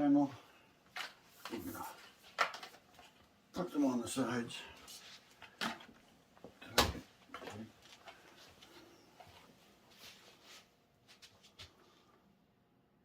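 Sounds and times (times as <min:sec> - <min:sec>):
soft rustles: 0:07.4 - 0:12.1.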